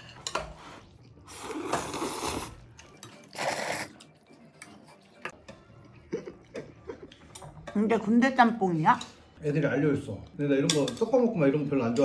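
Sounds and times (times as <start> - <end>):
noodles being slurped: 1.3 - 4.1.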